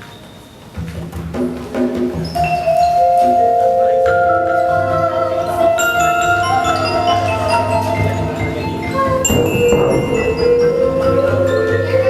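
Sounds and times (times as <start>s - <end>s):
mallet percussion music: 2.2s - 12.0s
low pulsing bass: 9.2s - 11.9s
sharp struck accent: 9.3s - 12.0s.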